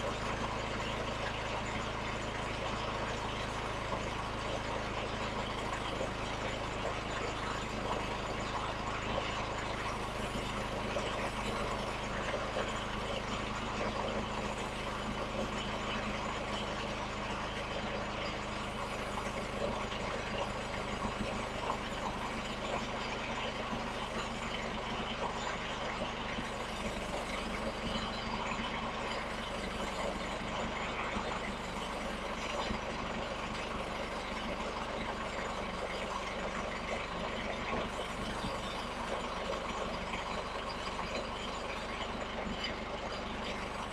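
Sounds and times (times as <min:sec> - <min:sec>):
small gas engine running: 0:00.0 - 0:43.9.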